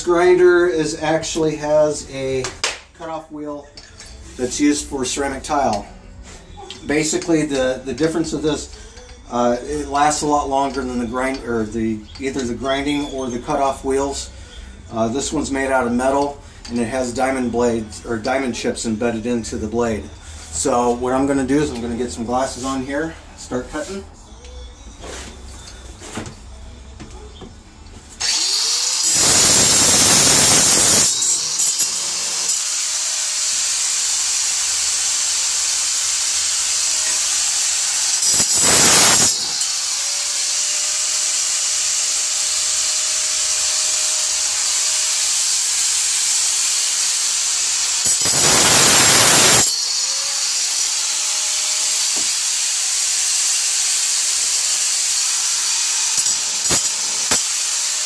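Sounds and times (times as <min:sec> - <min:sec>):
angle grinder cutting nails: 0:28.1 - 0:58.0.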